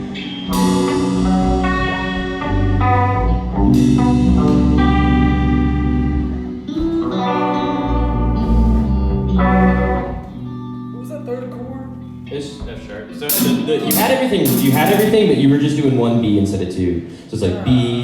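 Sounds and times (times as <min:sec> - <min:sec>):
heavy bass line: 0:00.0 - 0:10.6
rock band playing: 0:00.0 - 0:12.3, 0:13.2 - 0:15.4.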